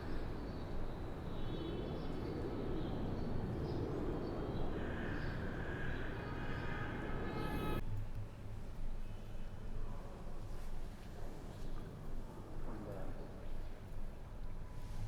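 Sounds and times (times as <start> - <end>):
distant traffic rumble: 0.0 - 7.8
faint high whine: 1.1 - 7.8.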